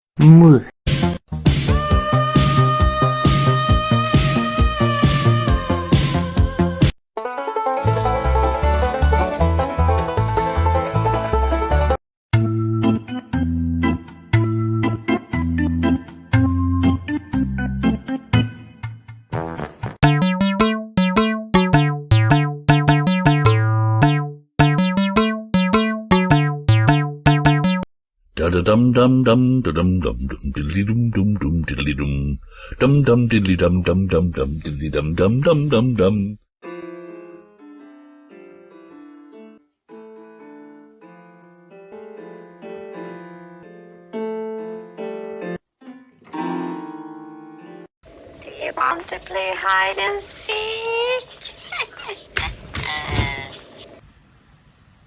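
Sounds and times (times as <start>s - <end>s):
bouncy keyboard melody: 7.2s - 12.0s, 20.0s - 27.9s
piano-like keyboard melody: 20.0s - 27.9s, 36.6s - 47.9s.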